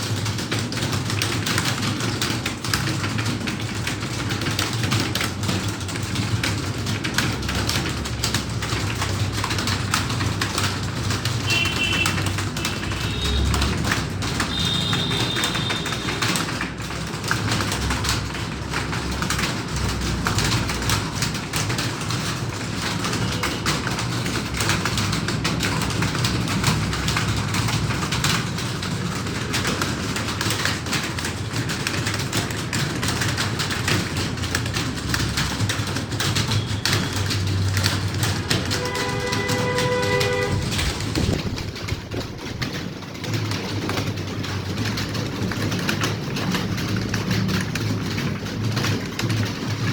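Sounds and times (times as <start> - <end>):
keyboards clattering: 0.0 - 49.9.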